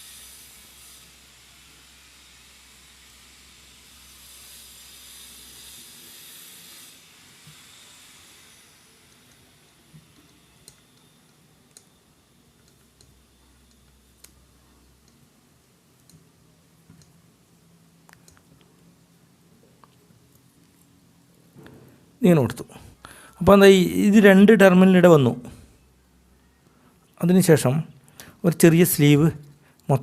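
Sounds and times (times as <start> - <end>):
high hiss: 0.0 - 12.4.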